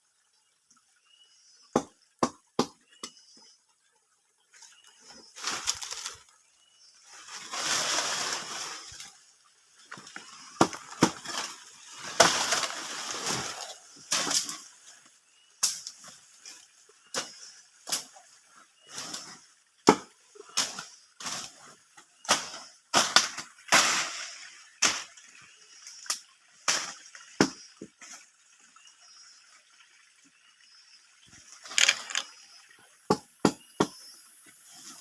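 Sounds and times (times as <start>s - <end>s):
branches rustling and crashing: 5.3s - 6.4s, 7.0s - 18.1s.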